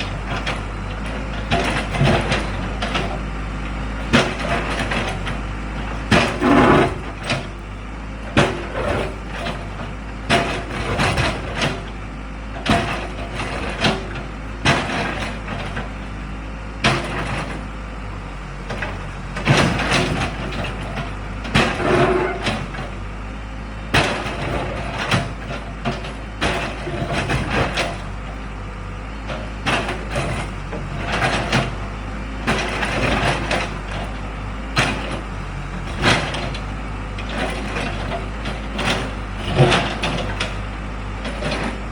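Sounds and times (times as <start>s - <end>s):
diesel engine running: 0.0s - 41.9s
bucket knocking and scraping concrete: 6.2s - 7.2s.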